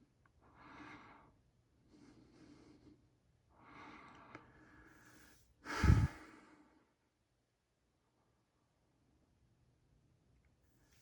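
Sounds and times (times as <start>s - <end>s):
soft breathing: 0.4s - 7.0s
loud exhale: 5.7s - 6.2s.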